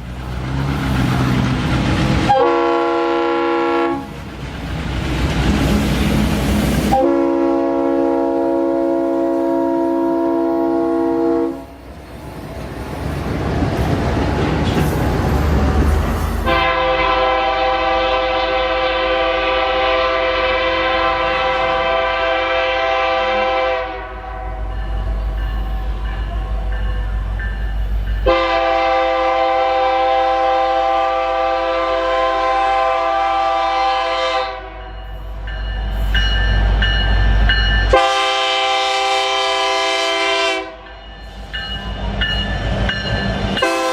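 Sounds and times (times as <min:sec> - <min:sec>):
moving train rumble: 0:00.0 - 0:43.9
train air horn blasts: 0:02.3 - 0:04.2, 0:06.8 - 0:11.8, 0:16.4 - 0:24.8, 0:28.2 - 0:34.9, 0:37.9 - 0:40.9, 0:43.6 - 0:43.9.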